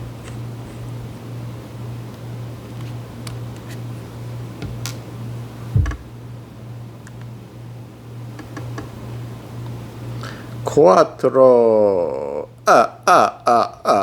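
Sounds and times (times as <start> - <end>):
steady low hum: 0.0 - 14.0
loud knock: 5.8 - 6.1.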